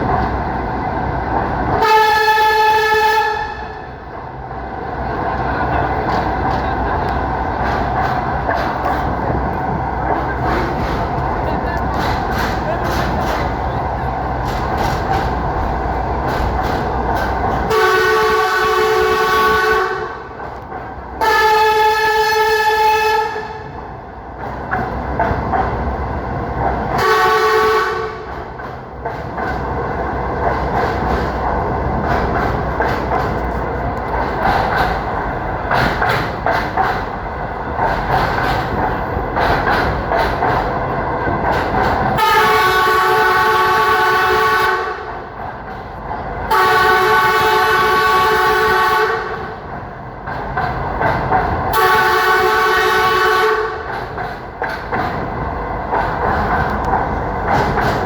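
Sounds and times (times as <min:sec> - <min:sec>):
train wheels clattering on rails: 0:00.0 - 0:58.0
train horn blasts: 0:01.8 - 0:04.0, 0:17.6 - 0:20.3, 0:21.2 - 0:23.8, 0:27.0 - 0:28.4, 0:42.2 - 0:45.2, 0:46.5 - 0:49.6, 0:51.7 - 0:53.9.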